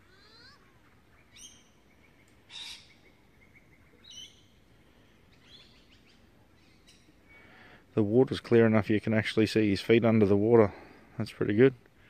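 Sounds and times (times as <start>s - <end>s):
faint high bird chirps: 0.0s - 7.7s
harsh bird call: 0.3s - 4.6s.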